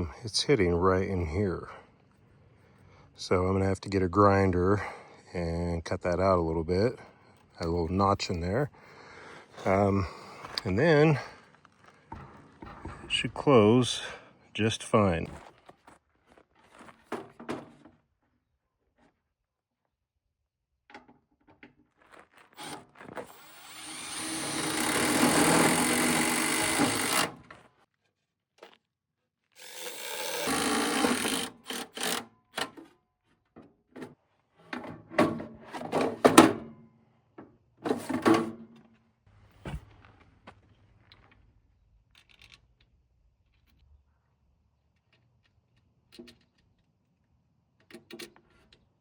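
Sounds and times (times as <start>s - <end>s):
angle grinder cutting metal: 23.3s - 27.4s, 29.6s - 32.2s.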